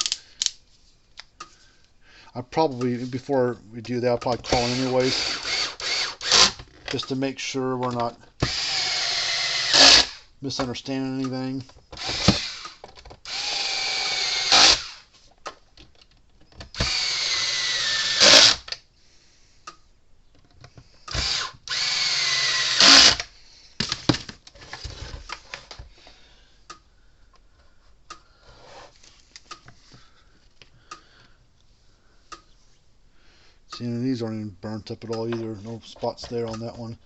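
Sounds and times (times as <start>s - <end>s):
power drill driving screws: 4.5s - 6.8s, 8.4s - 10.3s, 12.0s - 15.1s, 16.7s - 18.8s, 21.1s - 23.3s.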